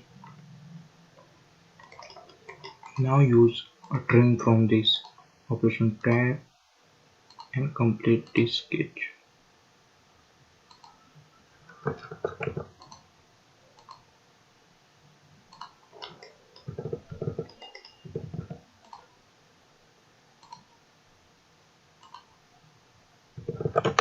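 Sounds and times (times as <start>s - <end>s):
computer mouse clicking: 1.8s - 3.1s, 7.3s - 7.6s, 10.7s - 11.0s, 11.7s - 13.1s, 13.8s - 14.1s, 15.5s - 19.1s, 20.4s - 20.7s, 22.0s - 22.4s.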